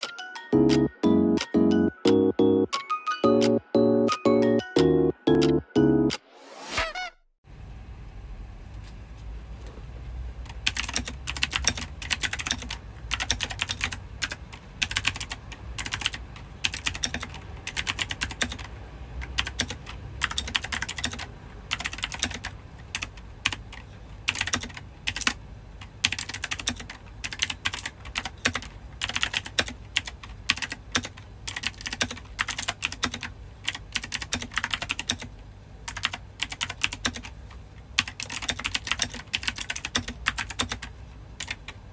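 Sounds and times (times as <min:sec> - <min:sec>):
low steady hum: 0:07.5 - 0:30.5
mechanical keyboard typing: 0:10.4 - 0:35.3, 0:35.9 - 0:37.4, 0:38.0 - 0:41.8.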